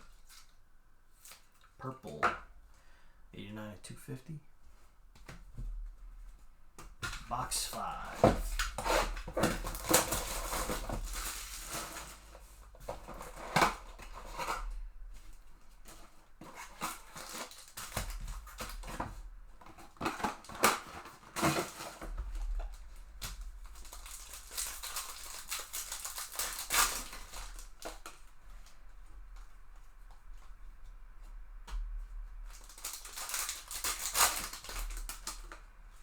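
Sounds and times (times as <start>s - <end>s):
packaging crinkling and tearing: 7.1s - 14.8s, 15.8s - 28.8s, 32.5s - 35.6s.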